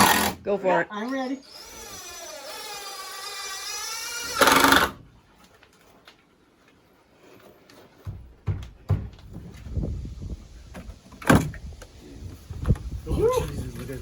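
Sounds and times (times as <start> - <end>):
cordless drill motor whining: 1.0 - 5.0.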